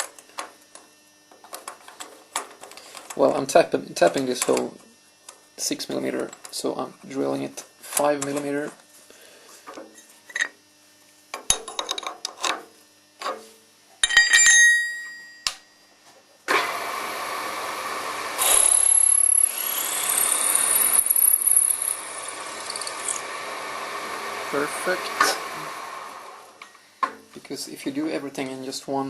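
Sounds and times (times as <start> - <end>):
metal tool clinking: 14.0 - 15.5
drill motor whining: 16.5 - 26.6.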